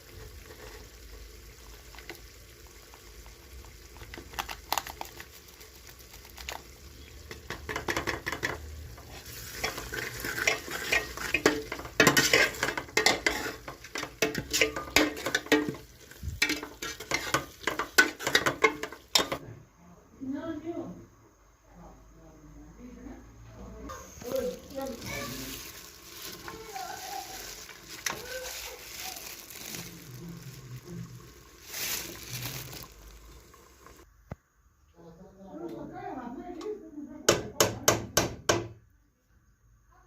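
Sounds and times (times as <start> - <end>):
food sizzling: 0.0 - 19.4, 23.9 - 34.1
spoon stirring and scraping pan: 7.1 - 19.4, 24.1 - 33.0.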